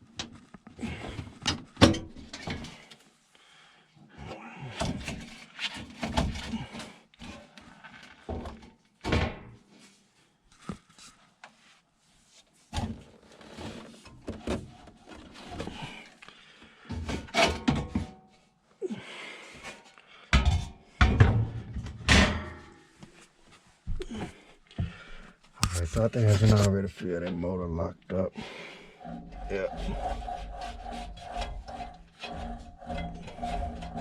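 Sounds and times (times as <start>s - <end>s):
clunks and scraping on sheet metal: 0.2s - 3.0s, 12.7s - 16.1s, 16.8s - 18.2s, 20.4s - 22.8s, 28.8s - 34.0s.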